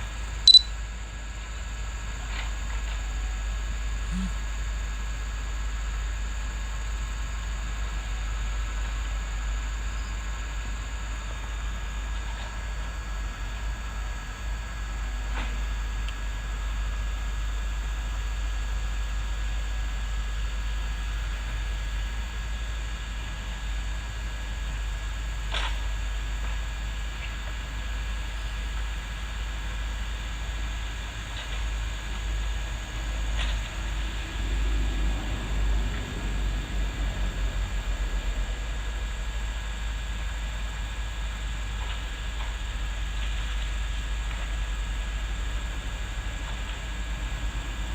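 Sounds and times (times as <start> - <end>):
backhoe engine rumbling: 25.2 - 39.3, 40.2 - 47.9.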